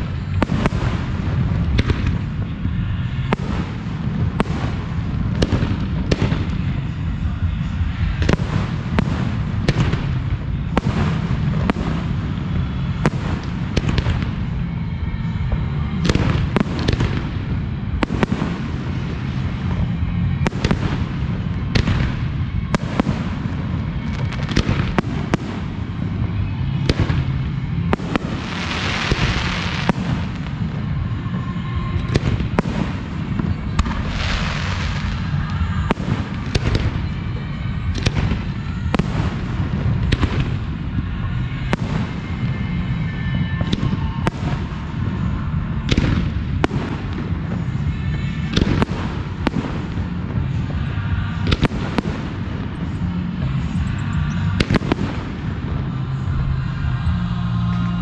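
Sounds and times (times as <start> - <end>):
fireworks bangs: 0.0 - 58.0
low rumble: 0.0 - 58.0
fireworks hiss: 33.9 - 36.5.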